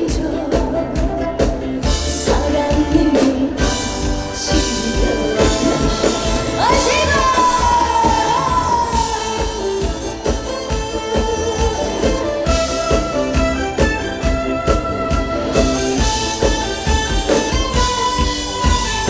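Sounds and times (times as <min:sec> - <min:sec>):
trot music band playing: 0:00.0 - 0:19.0.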